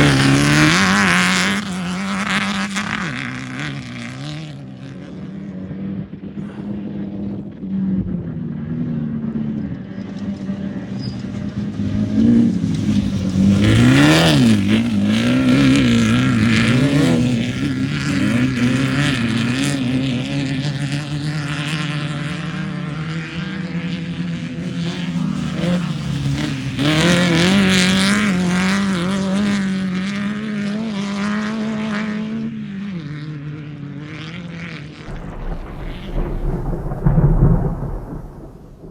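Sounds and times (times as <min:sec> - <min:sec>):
race vehicle engine running hard: 0:00.0 - 0:36.1
loud rushes of noise: 0:35.0 - 0:38.9.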